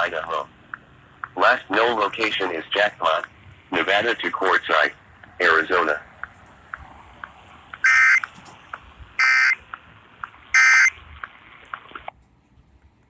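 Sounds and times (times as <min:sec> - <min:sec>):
faint radio hiss: 0:00.0 - 0:06.6, 0:07.3 - 0:12.8
two-tone digital chirping bursts: 0:07.8 - 0:08.3, 0:09.2 - 0:09.6, 0:10.6 - 0:11.0.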